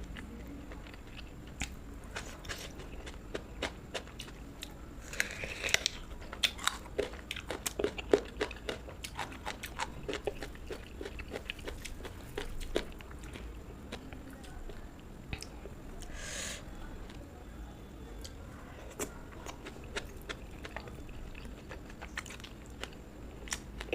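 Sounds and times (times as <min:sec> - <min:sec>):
person chewing crunchy food: 0:00.8 - 0:14.2, 0:18.9 - 0:23.9.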